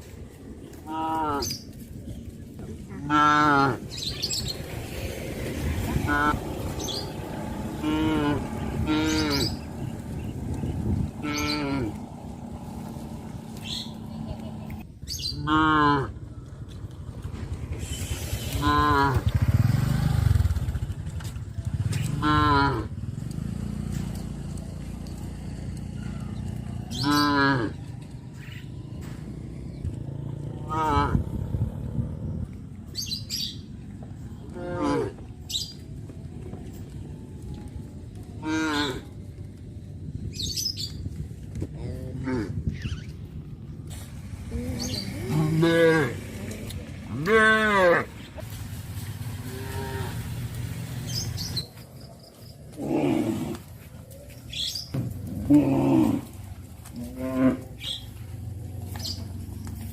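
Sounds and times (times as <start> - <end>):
birds chirping: 0.0 - 59.9
cow mooing: 3.0 - 3.8, 7.7 - 9.7, 11.2 - 12.0, 15.4 - 16.2, 22.2 - 22.9, 27.0 - 27.7, 30.6 - 31.6, 34.5 - 35.2, 38.4 - 39.1, 44.8 - 46.3, 47.1 - 48.2, 49.4 - 50.3, 55.3 - 58.0.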